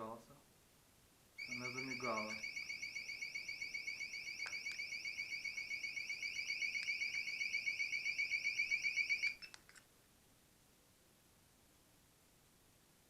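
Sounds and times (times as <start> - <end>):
alarm siren warbling wail: 1.4 - 9.4.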